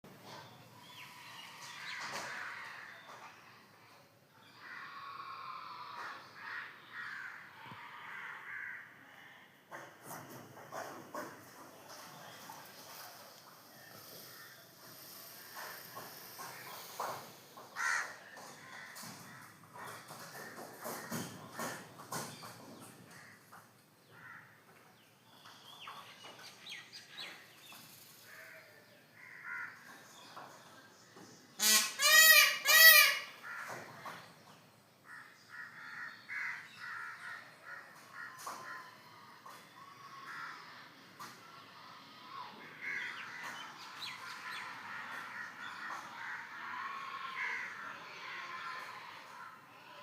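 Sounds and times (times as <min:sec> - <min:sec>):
crows cawing: 0:01.1 - 0:03.3, 0:04.4 - 0:09.2, 0:15.5 - 0:21.8, 0:23.1 - 0:24.6, 0:28.2 - 0:30.0, 0:31.6 - 0:34.1, 0:35.0 - 0:41.3, 0:42.6 - 0:48.8
harsh bird call: 0:31.6 - 0:33.8.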